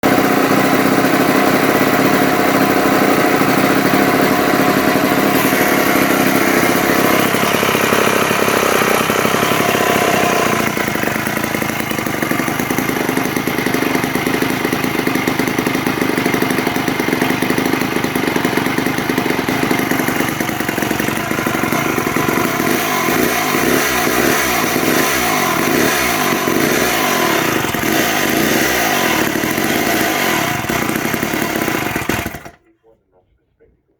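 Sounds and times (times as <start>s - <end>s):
reciprocating saw running: 0.0s - 32.6s.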